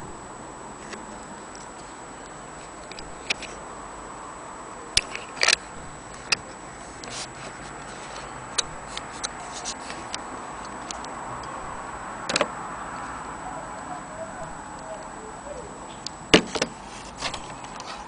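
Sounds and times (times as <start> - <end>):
faint high whine: 9.7 - 16.3.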